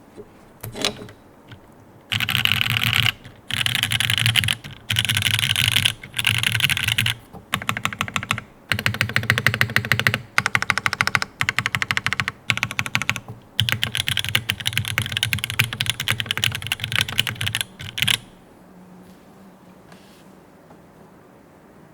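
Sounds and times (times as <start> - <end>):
fast mechanical keyboard typing: 1.5 - 18.3
faint hiss: 18.4 - 21.9.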